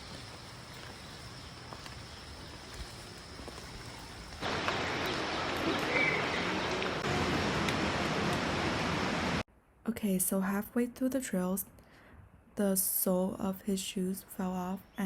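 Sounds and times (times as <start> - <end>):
steady rain hiss: 0.0 - 9.4.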